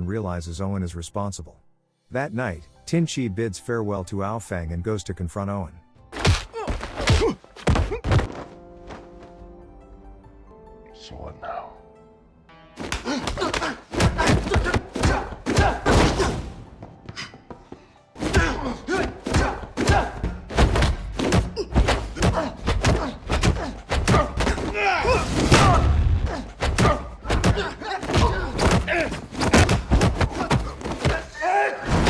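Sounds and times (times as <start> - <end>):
film music score: 1.4 - 32.0
strikes and heavy thuds: 6.2 - 9.3, 12.8 - 17.0, 18.2 - 32.0.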